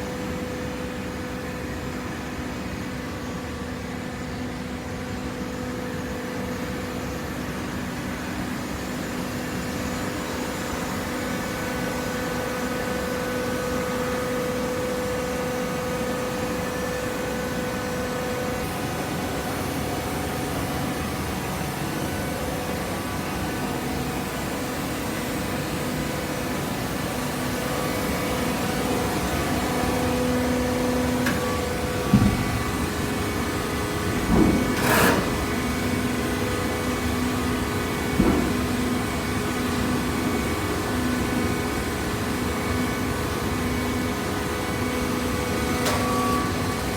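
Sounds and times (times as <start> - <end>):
hydraulic baler humming: 9.6 - 46.9.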